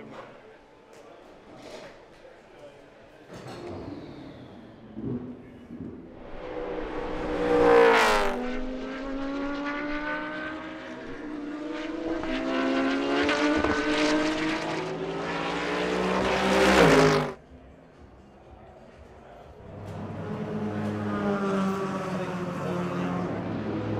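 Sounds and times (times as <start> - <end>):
race cars passing: 4.3 - 17.4, 19.6 - 23.9.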